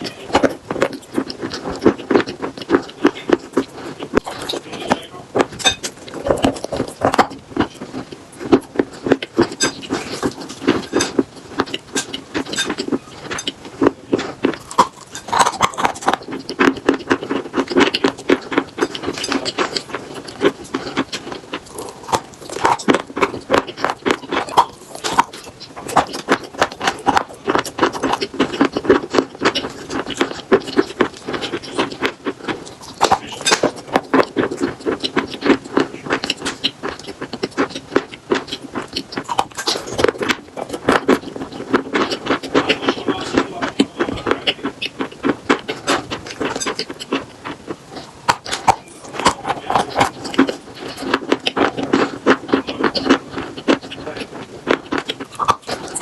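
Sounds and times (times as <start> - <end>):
chalk being bitten and chewed: 0.0 - 4.8, 5.4 - 56.0.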